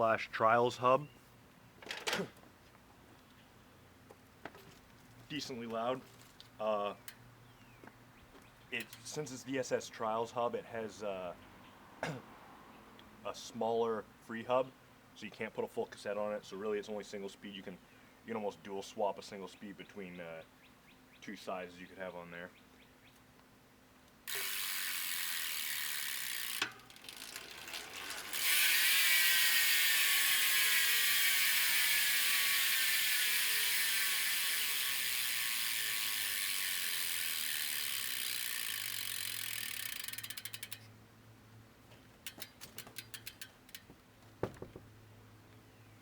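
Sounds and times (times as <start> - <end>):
bicycle hub freewheel clicking: 24.2 - 40.9, 42.2 - 43.9.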